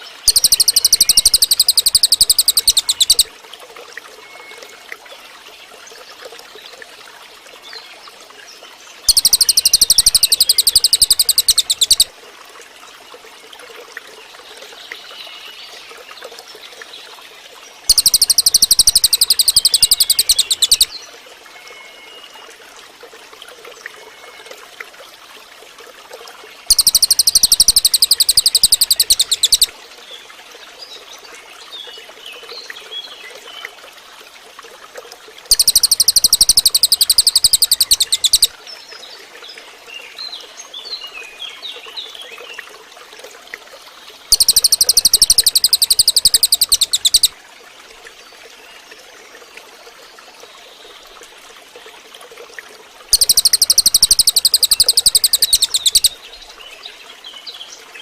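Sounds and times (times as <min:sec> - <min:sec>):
running water trickling: 0:00.0 - 0:58.0
bird buzzing trill: 0:00.3 - 0:03.3, 0:09.1 - 0:12.1, 0:17.9 - 0:20.9, 0:26.7 - 0:29.7, 0:35.5 - 0:38.5, 0:44.3 - 0:47.3, 0:53.1 - 0:56.1
faint short bird chirps: 0:00.3 - 0:03.3, 0:09.1 - 0:12.1, 0:17.9 - 0:20.9, 0:26.7 - 0:29.7, 0:35.5 - 0:38.5, 0:44.3 - 0:47.3, 0:53.1 - 0:56.2.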